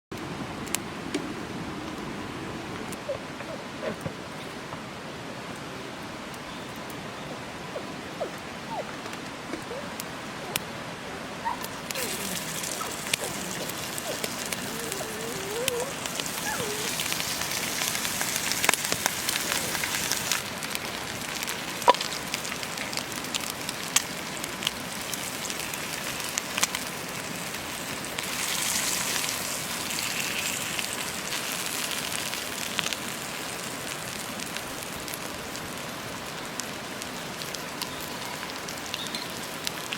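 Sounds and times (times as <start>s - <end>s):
campfire crackling and popping: 11.6s - 39.9s.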